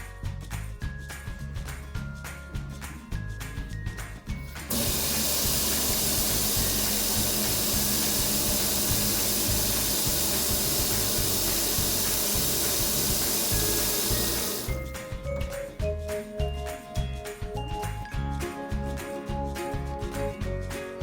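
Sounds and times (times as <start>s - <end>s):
water spraying hiss: 4.7s - 15.6s.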